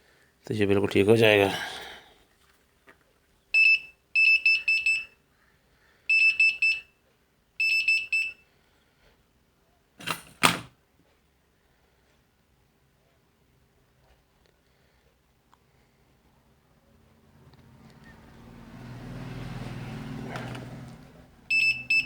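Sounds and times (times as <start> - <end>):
buzzer beeping: 3.6 - 5.1, 6.1 - 6.8, 7.6 - 8.4, 21.5 - 22.0.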